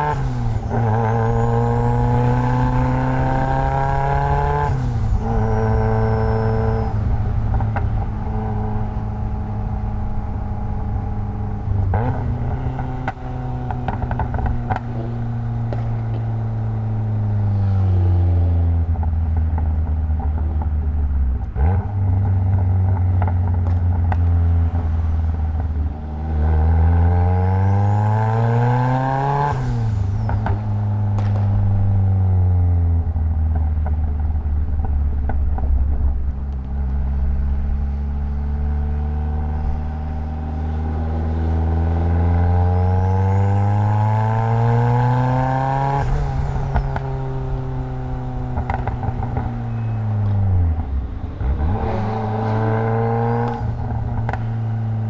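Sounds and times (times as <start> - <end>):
car engine revving: 0.0 - 55.0
faint high turbo whistle: 46.0 - 51.5.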